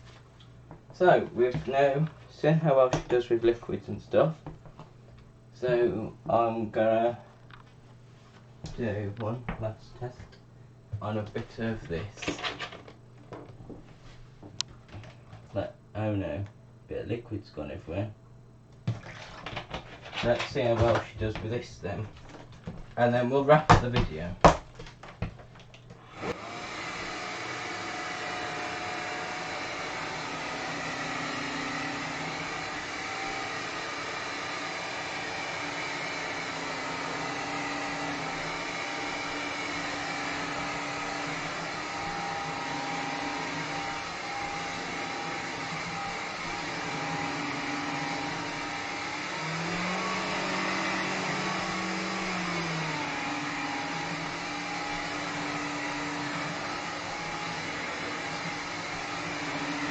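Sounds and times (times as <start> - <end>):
floor cleaner motor whine: 24.8 - 59.9.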